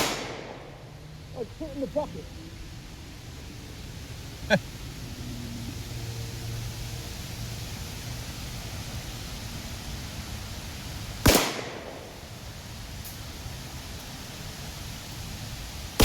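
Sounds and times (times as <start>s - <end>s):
pistol shot with echo: 0.0s - 0.7s, 11.2s - 12.2s
outdoor background noise: 0.0s - 16.0s.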